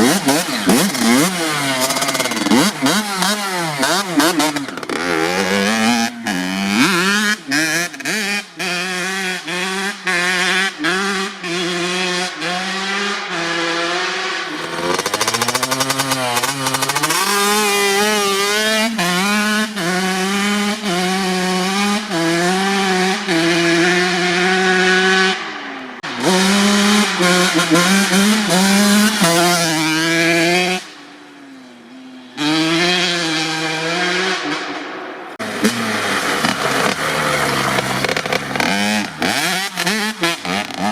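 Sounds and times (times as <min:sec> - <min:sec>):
two-stroke engine revving: 0:00.0 - 0:31.2, 0:32.3 - 0:40.9
engine crackles: 0:14.5 - 0:19.2, 0:34.3 - 0:40.9.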